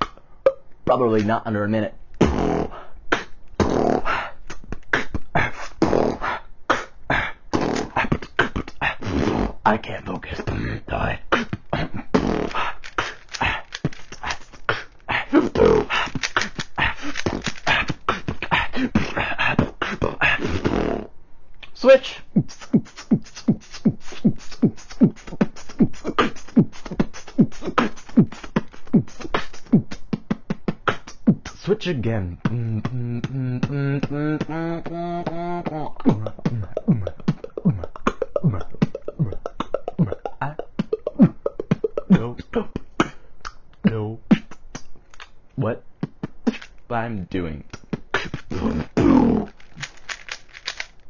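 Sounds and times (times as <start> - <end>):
person beatboxing: 0.0 - 0.6, 2.2 - 45.3, 46.0 - 46.8, 47.6 - 50.8
hummed bass line: 32.4 - 37.2.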